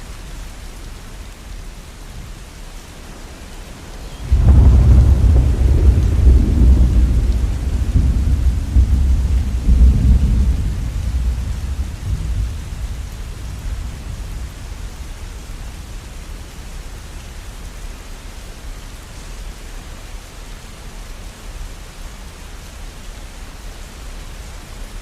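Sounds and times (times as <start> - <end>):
steady rain: 0.0 - 25.0
thunder rumbling: 3.0 - 16.0.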